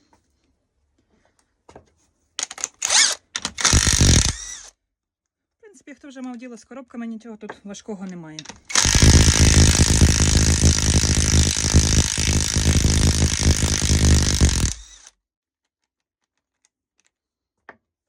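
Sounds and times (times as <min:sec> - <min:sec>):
power tool running loudly: 0:03.6 - 0:04.5, 0:08.7 - 0:15.1.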